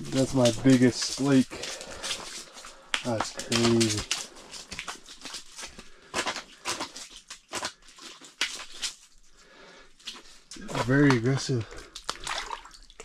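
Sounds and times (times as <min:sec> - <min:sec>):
scuffs and knocks on ice: 0:00.2 - 0:07.8.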